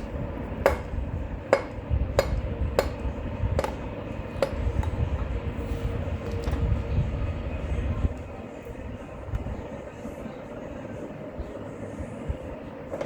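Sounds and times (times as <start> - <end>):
hammer striking metal: 0.6 - 0.9, 1.5 - 3.0.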